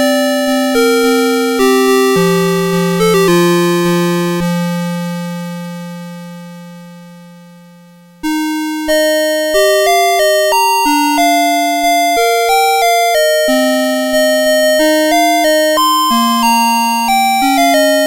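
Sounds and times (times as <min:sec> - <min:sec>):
alarm clock electronic melody chime: 0:00.0 - 0:04.6, 0:08.3 - 0:18.0.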